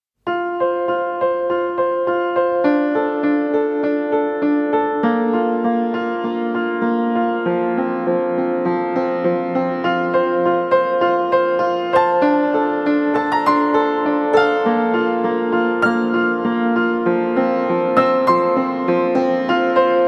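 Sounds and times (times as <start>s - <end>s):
gentle piano piece: 0.2s - 20.0s.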